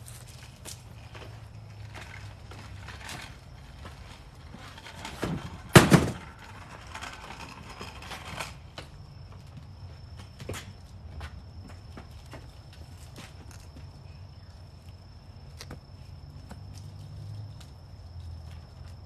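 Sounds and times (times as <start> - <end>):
objects knocking and clattering: 4.9 - 7.4.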